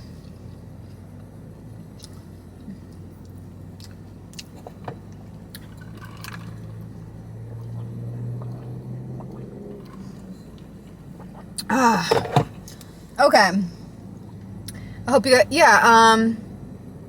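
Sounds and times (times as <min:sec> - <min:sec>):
low car hum: 0:00.0 - 0:17.0
person chewing pastry: 0:01.9 - 0:06.7, 0:07.5 - 0:11.7.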